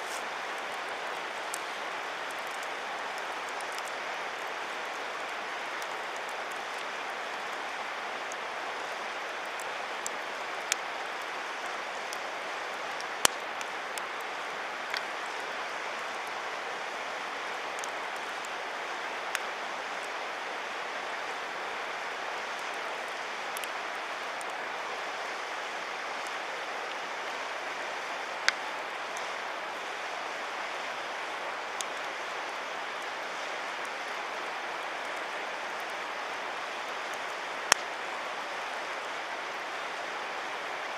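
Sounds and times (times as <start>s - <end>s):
fire crackling pops: 0.0s - 16.4s, 17.4s - 20.4s, 21.2s - 27.5s, 28.2s - 38.1s
campfire hissing: 0.0s - 40.9s.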